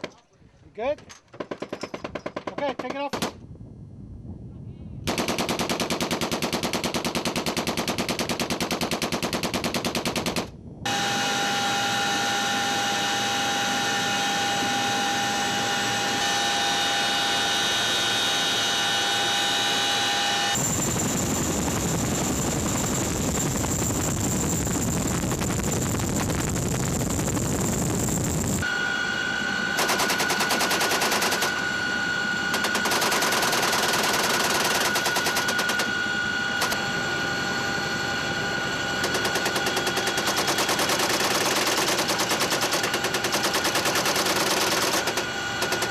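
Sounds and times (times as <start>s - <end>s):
machine guns firing bursts: 5.1s - 10.5s, 29.8s - 31.6s, 32.5s - 36.0s, 39.0s - 45.9s.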